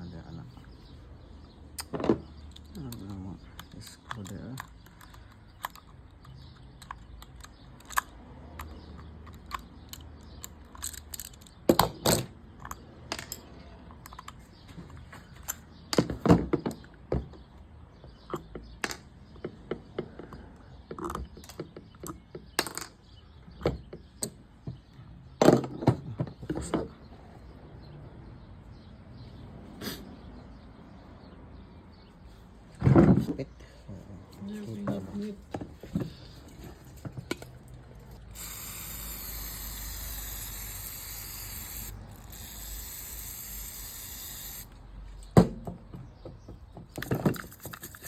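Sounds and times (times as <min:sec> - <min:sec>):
clicks and taps of reel parts: 0:01.8 - 0:17.0, 0:35.5 - 0:45.4
screws being worked loose: 0:38.0 - 0:44.8, 0:47.3 - 0:48.0.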